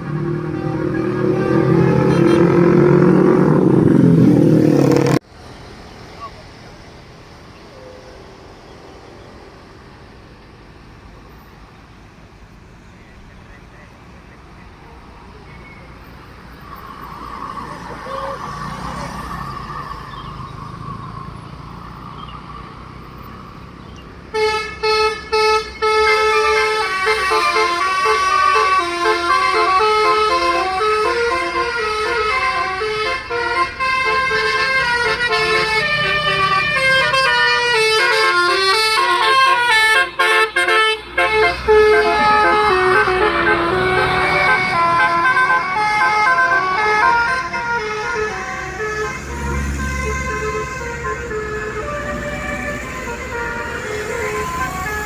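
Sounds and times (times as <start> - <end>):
bus musical air horn: 0.0 - 4.2, 24.3 - 55.0
low vehicle rumble: 0.0 - 24.4.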